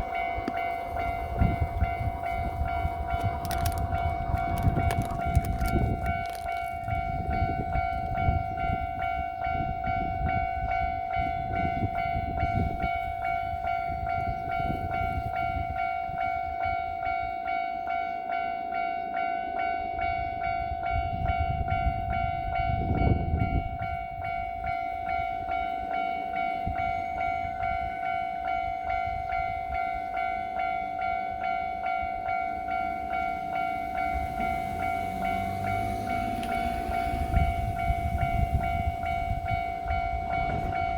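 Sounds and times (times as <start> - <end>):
wheels clacking over rail joints: 0.0 - 7.1, 32.6 - 39.5
train rumbling past: 0.0 - 16.5, 19.8 - 40.9
level-crossing warning bell: 0.0 - 40.9.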